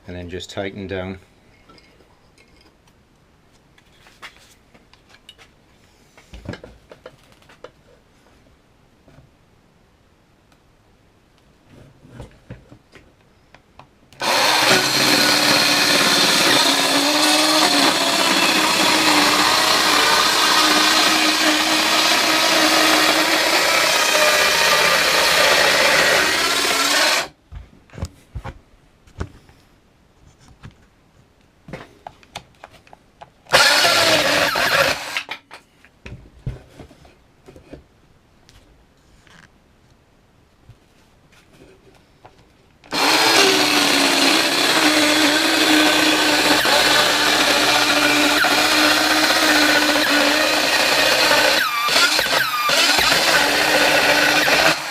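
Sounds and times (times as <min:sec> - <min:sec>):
circular saw cutting: 0:14.2 - 0:27.3, 0:33.5 - 0:35.3, 0:42.9 - 0:54.9.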